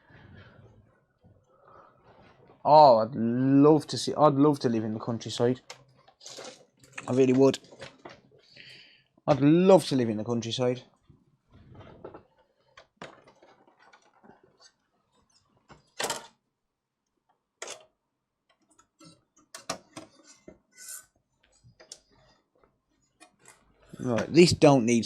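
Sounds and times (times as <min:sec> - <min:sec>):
plastic parts clicking and knocking: 0:11.8 - 0:14.8, 0:17.3 - 0:20.6.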